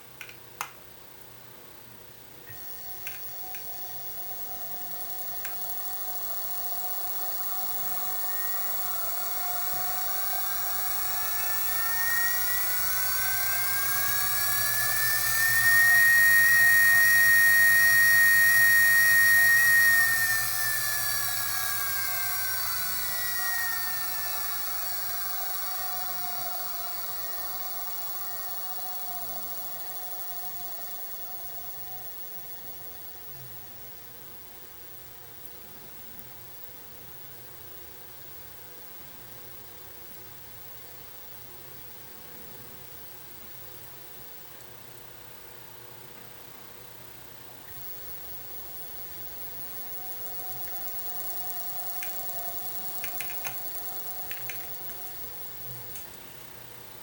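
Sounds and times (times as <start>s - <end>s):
treadmill motor whine: 2.5s - 34.7s, 47.5s - 57.0s.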